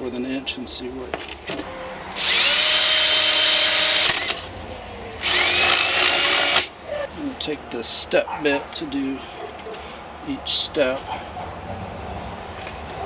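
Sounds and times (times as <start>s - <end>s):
power drill whining through plastic: 2.2s - 4.4s, 5.2s - 6.7s.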